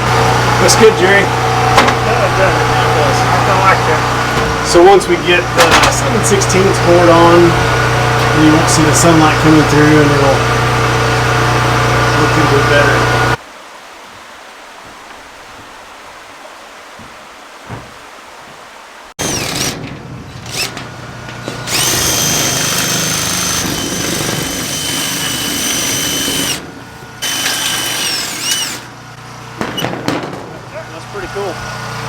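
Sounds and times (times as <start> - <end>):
drill motor whine: 19.2 - 19.8, 20.4 - 20.8, 21.4 - 26.6, 27.2 - 28.9
shear cutting roofing tin: 19.2 - 26.6, 27.2 - 29.0.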